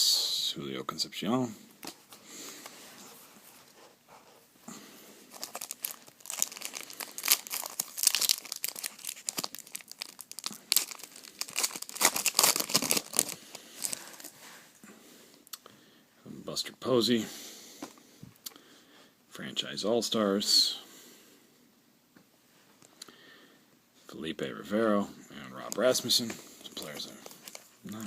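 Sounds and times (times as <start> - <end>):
foil wrapper tearing and crinkling: 5.3 - 14.3.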